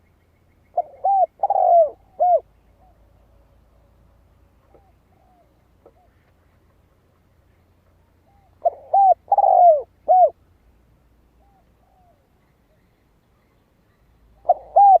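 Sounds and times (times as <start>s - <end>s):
dove cooing: 0.7s - 3.4s, 4.6s - 6.2s, 8.2s - 10.4s, 11.4s - 12.3s, 14.4s - 15.0s.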